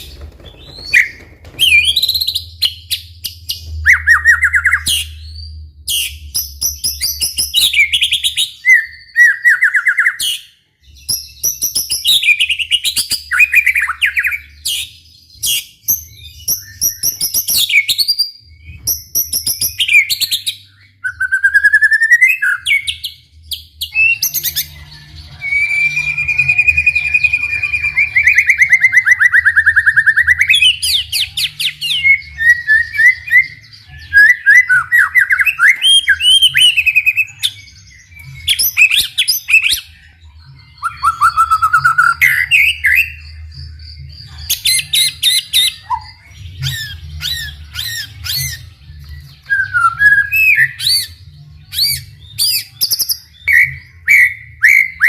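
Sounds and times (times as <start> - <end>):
bird rolling trill: 0.0 - 2.4
bird singing whistled phrases: 3.6 - 5.2, 44.6 - 48.6, 49.2 - 55.0.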